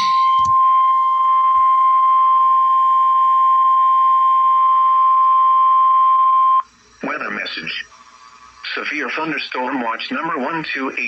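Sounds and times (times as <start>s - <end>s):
steady high alarm tone: 0.0s - 2.0s.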